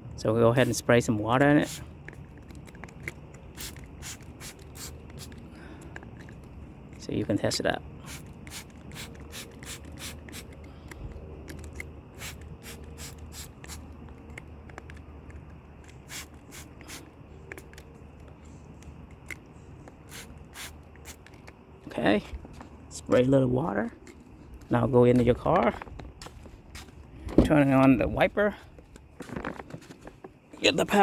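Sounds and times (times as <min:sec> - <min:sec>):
spray bottle squirting water: 0:01.6 - 0:05.6, 0:08.0 - 0:10.8, 0:11.5 - 0:15.0, 0:15.8 - 0:17.8, 0:19.9 - 0:21.5.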